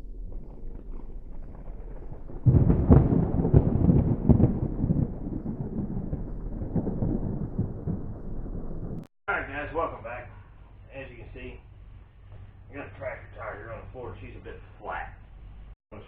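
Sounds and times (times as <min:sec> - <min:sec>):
wind buffeting microphone: 0:00.0 - 0:09.1.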